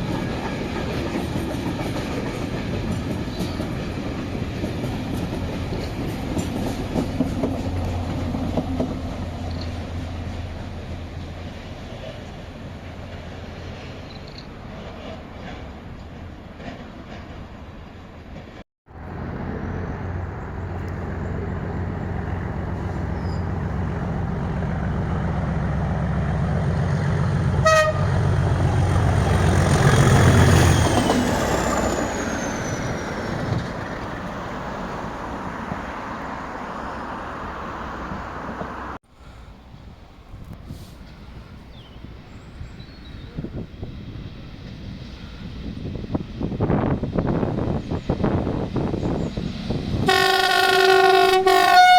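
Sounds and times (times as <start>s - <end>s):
train engine rumble: 0.0s - 51.9s
train horn toot: 27.6s - 28.2s, 50.0s - 51.9s.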